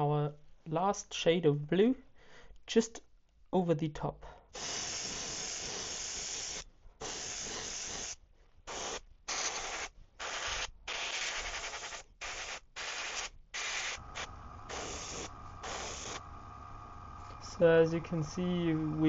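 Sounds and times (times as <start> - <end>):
airbrush spraying hissing bursts: 4.6 - 17.2
faint steady hum: 14.0 - 19.0.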